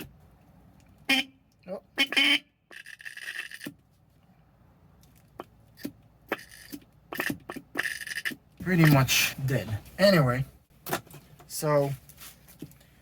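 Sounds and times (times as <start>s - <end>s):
raspy horn buzzing: 1.0s - 3.6s.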